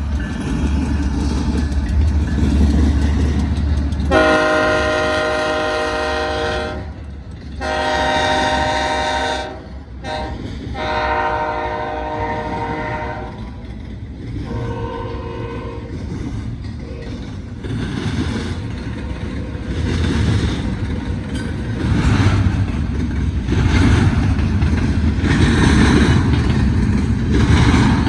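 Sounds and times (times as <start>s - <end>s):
wheels clattering over rails: 0.0s - 5.7s, 12.8s - 28.0s
train rumble: 0.0s - 28.0s
locomotive horn blasts: 4.1s - 7.0s, 7.6s - 13.4s, 14.5s - 16.0s.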